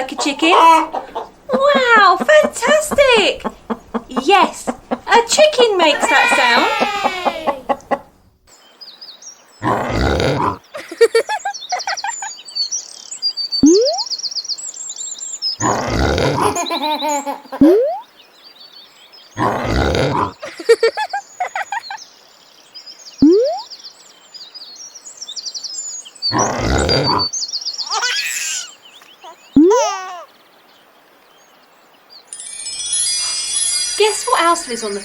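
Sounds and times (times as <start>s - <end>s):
birds chirping: 0.0s - 35.0s
rising whistles: 32.3s - 35.0s.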